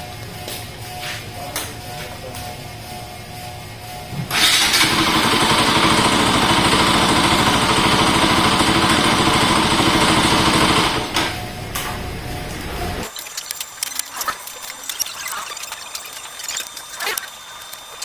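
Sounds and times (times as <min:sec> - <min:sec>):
motorcycle engine running loudly: 0:04.3 - 0:11.1.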